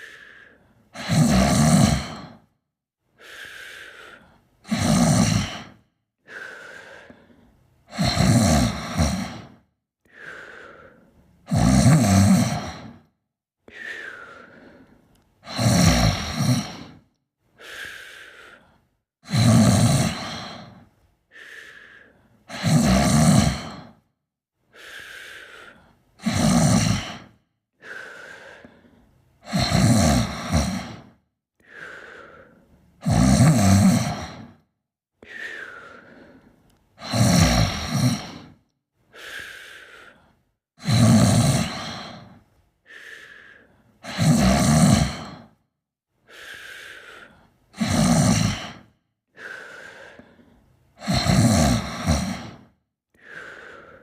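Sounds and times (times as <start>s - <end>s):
loud rough snoring: 1.0s - 2.5s, 4.6s - 5.9s, 7.9s - 9.7s, 11.4s - 13.2s, 15.4s - 17.1s, 19.2s - 20.9s, 22.5s - 24.1s, 26.2s - 28.0s, 29.4s - 31.2s, 33.0s - 34.7s, 37.0s - 38.6s, 40.7s - 42.4s, 44.0s - 45.6s, 47.2s - 50.3s, 51.0s - 54.0s.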